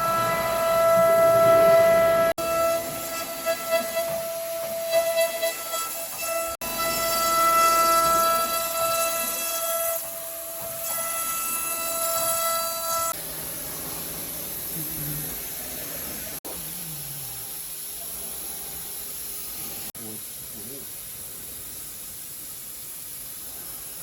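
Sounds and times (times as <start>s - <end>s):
router spindle whine: 0.0s - 13.6s
steady hiss: 13.4s - 24.0s.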